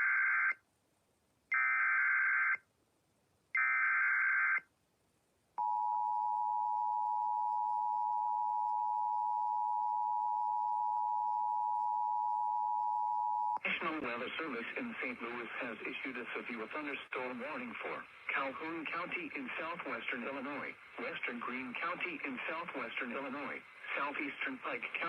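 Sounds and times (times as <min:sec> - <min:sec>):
steady two-tone beep: 0:05.6 - 0:13.6.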